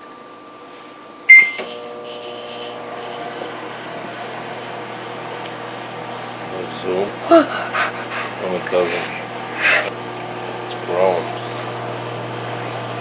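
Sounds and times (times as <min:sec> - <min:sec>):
microwave oven humming: 0:00.0 - 0:13.0
microwave keypad beep: 0:01.3 - 0:01.7.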